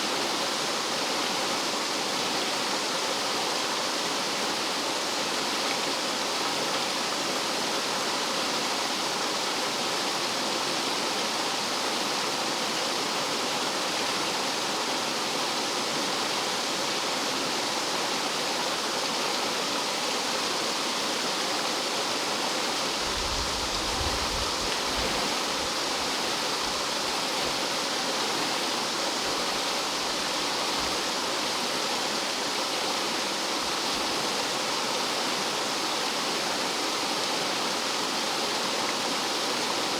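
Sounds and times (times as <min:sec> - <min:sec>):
stream water rushing over rocks: 0:00.0 - 0:39.9.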